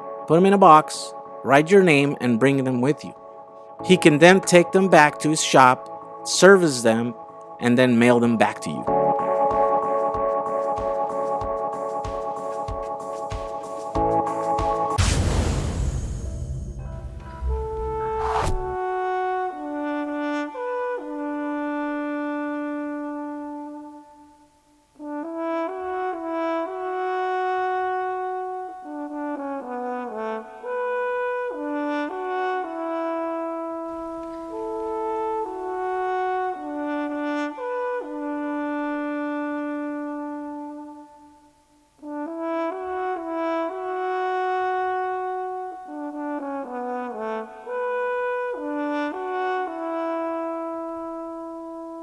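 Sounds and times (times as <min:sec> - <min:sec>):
instrumental music sustained chords: 0:00.0 - 0:15.0
slow brass melody: 0:00.0 - 0:15.0, 0:16.7 - 0:52.0.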